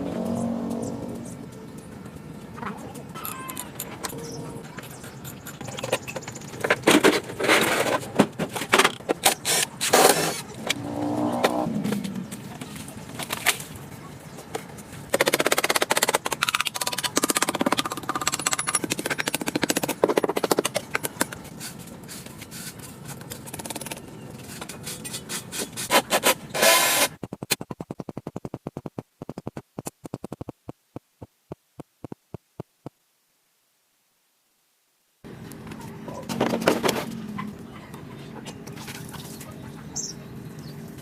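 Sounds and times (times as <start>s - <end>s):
rapid clicking and rattling: 15.1s - 21.5s.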